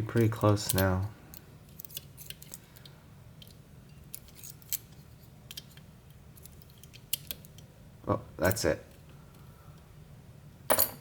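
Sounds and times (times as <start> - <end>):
small metal clicks of lock picking: 0.4 - 5.8, 6.4 - 7.7.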